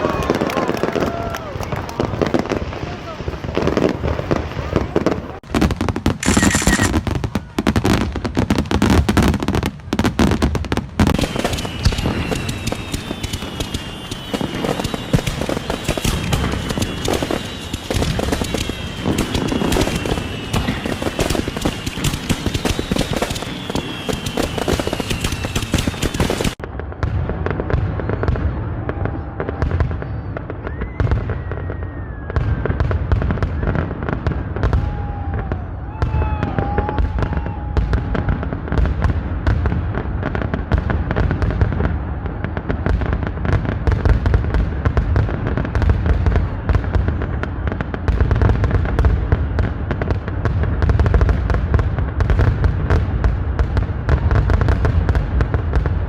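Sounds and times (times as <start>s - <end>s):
deep fireworks booms: 0.0s - 56.0s
fireworks crackling and banging: 0.0s - 56.0s
falling whistling tones: 11.2s - 26.6s, 29.9s - 32.7s.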